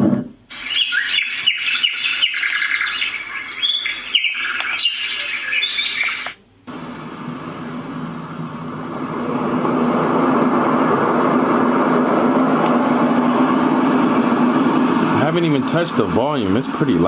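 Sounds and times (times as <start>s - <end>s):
steady noise with low hum: 0.0s - 17.0s
birdsong from speaker: 0.5s - 6.4s.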